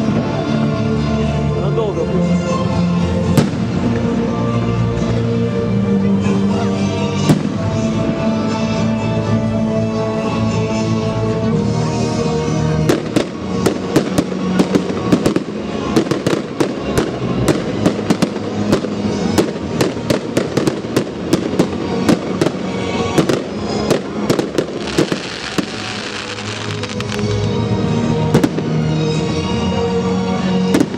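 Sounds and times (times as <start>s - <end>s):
fireworks bangs and crackles: 0.0s - 1.0s, 3.2s - 4.4s, 6.1s - 9.0s, 11.8s - 29.7s, 30.5s - 30.9s
music playing: 0.0s - 30.9s.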